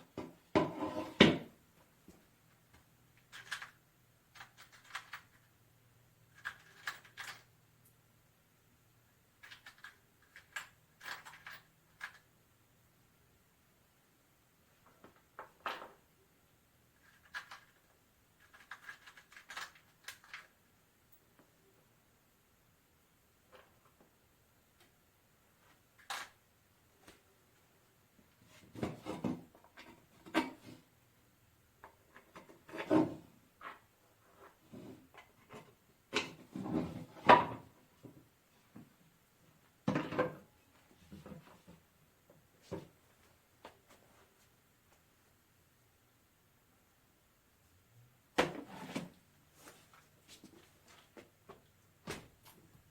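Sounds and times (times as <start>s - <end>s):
metal parts clicking and knocking: 3.2s - 5.6s, 6.3s - 7.5s, 9.4s - 12.3s, 17.0s - 20.6s.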